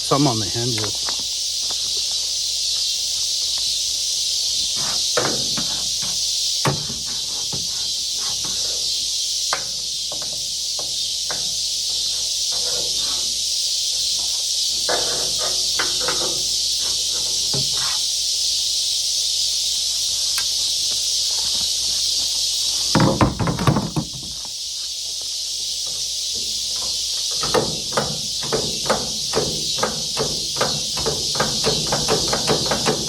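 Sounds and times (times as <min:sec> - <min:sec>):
insects droning: 0:00.0 - 0:33.0.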